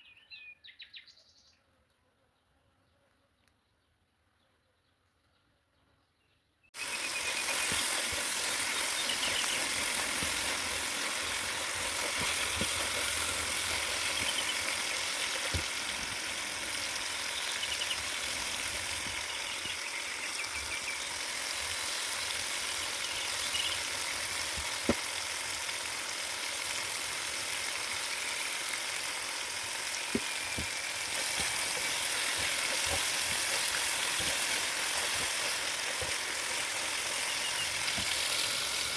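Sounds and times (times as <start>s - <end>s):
food sizzling in a pan: 6.8s - 38.9s
sharp pops: 30.1s - 36.4s.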